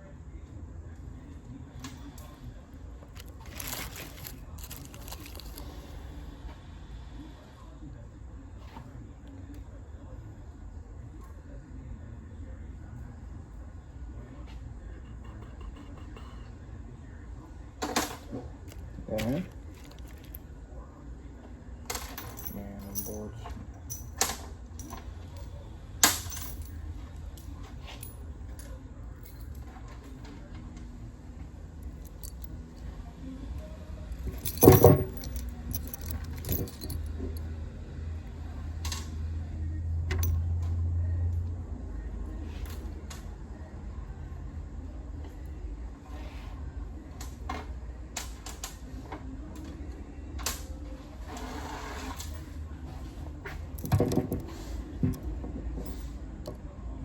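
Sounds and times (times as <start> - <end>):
rustling: 3.1 - 5.8
metal bolts clinking: 3.2 - 5.6, 18.7 - 20.4, 22.0 - 26.8, 34.2 - 37.1.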